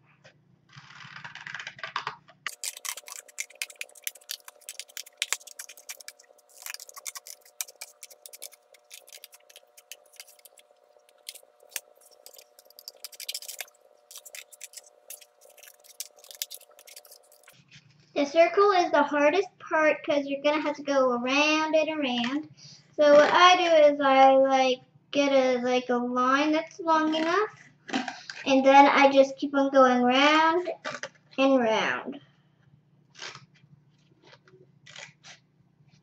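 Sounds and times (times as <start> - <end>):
scissors snipping paper: 0.7 - 17.6, 34.3 - 35.4
paper rustling: 0.7 - 18.0
faint steady hum: 2.3 - 34.8.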